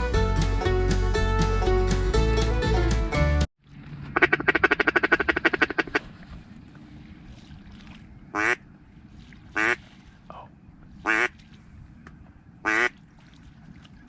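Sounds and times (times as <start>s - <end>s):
duck quacking: 8.4s - 8.6s, 9.6s - 9.8s, 11.1s - 11.3s, 12.7s - 12.9s.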